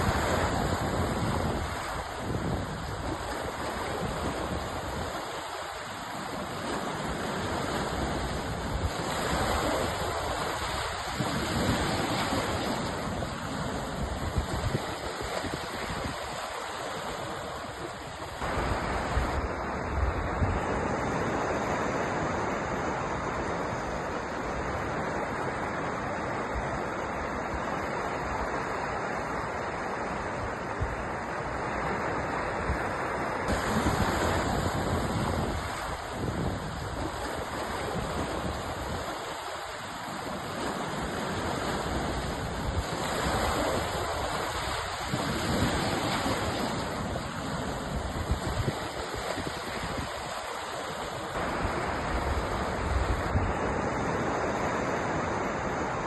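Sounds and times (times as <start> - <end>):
sea waves surging: 0.0 - 56.0.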